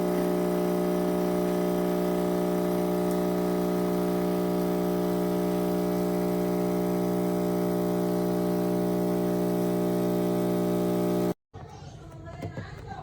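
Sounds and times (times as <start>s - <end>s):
espresso machine pump humming: 0.0s - 11.4s.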